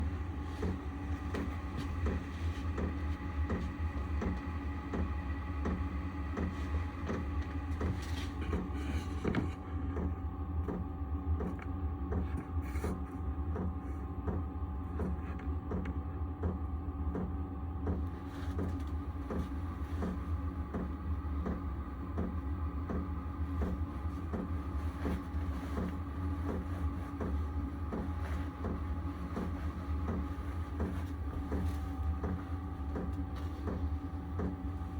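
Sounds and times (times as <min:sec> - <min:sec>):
heater blower humming: 0:18.0 - 0:34.9.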